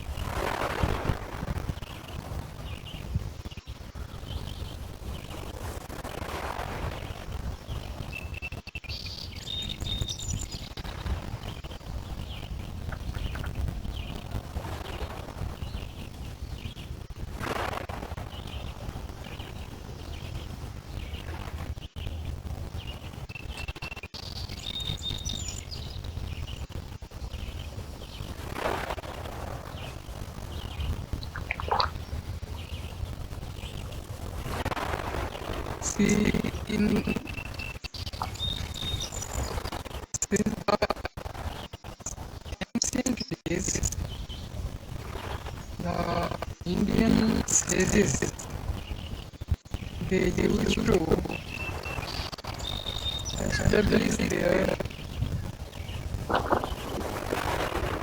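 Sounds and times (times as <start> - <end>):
bird song: 1.8 - 5.4, 7.0 - 14.3, 14.9 - 17.0, 18.3 - 21.3, 21.9 - 28.3, 29.6 - 34.0, 35.4 - 40.8, 41.4 - 57.0
birds chirping: 8.2 - 14.2, 29.6 - 33.9, 35.4 - 57.1
lake waves washing on shore: 28.4 - 41.1.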